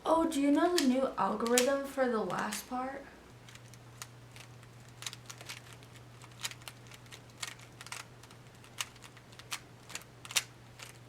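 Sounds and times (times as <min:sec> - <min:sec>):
steady low hum: 0:00.0 - 0:11.0
plastic puzzle cube clicking: 0:03.5 - 0:11.0.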